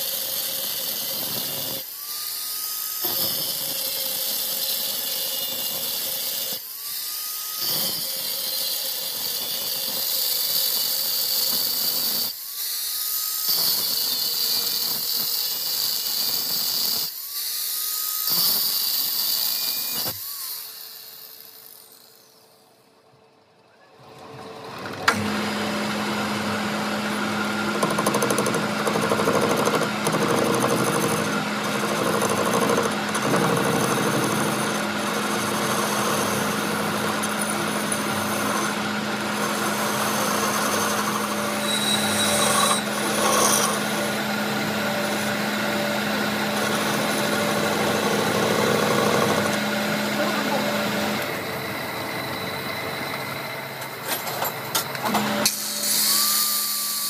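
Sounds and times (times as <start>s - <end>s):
power tool high-pitched hiss: 0.0s - 22.7s, 39.4s - 44.1s, 54.7s - 57.0s.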